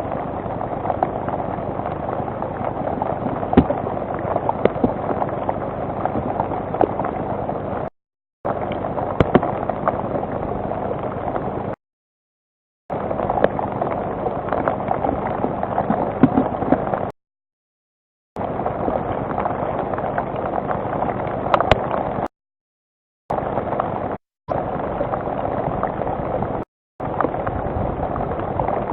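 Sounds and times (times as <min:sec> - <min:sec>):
rain pattering on microphone: 0:00.0 - 0:07.9, 0:08.5 - 0:11.8, 0:12.9 - 0:17.1, 0:18.4 - 0:22.3, 0:23.3 - 0:28.9.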